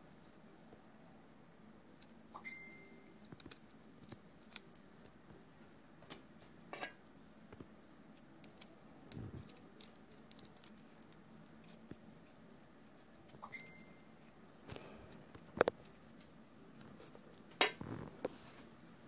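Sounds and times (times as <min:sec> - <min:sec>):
crackle: 0:07.5 - 0:18.4.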